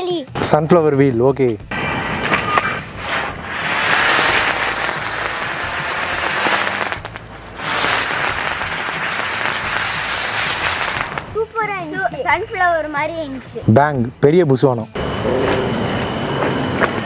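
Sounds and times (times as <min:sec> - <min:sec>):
firework fizzing hiss: 0:01.7 - 0:13.6.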